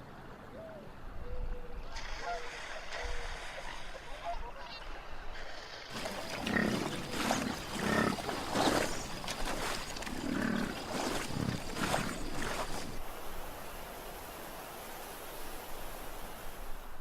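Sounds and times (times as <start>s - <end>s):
animal growls and barks: 6.0s - 12.7s.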